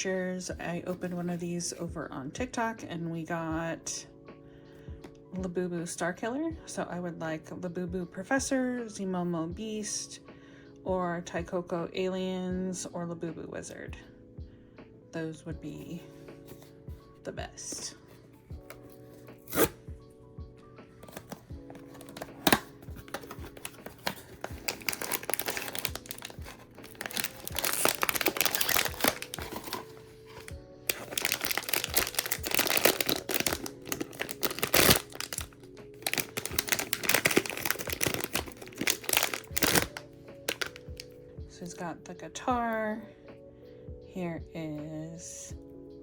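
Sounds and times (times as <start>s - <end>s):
soft background music: 0.0s - 46.0s
plastic wrapping crinkling and tearing: 18.7s - 19.8s, 21.0s - 41.1s
packaging clicks: 21.0s - 41.0s.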